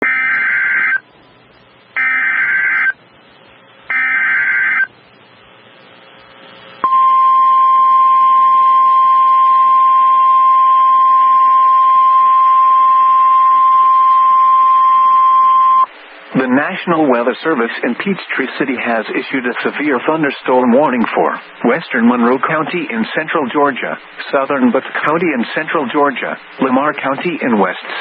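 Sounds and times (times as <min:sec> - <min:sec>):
steady warning alarm tone: 0:00.0 - 0:01.1, 0:01.8 - 0:03.0, 0:03.8 - 0:05.0, 0:06.8 - 0:15.9
buzzing digital data bursts: 0:00.0 - 0:03.0, 0:03.8 - 0:05.2.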